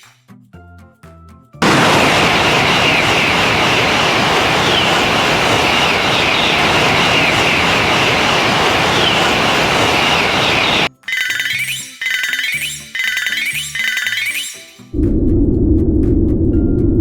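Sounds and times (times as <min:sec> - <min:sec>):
train passing: 0:01.6 - 0:10.9.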